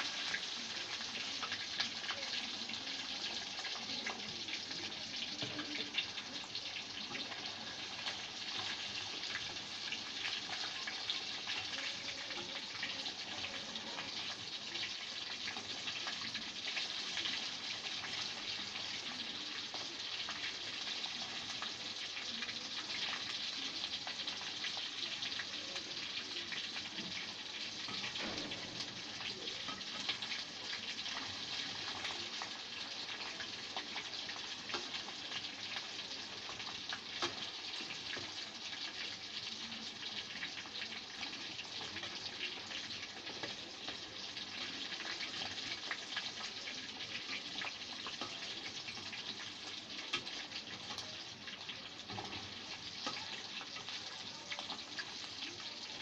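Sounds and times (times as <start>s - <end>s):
food sizzling in a frying pan: 0.0s - 56.0s.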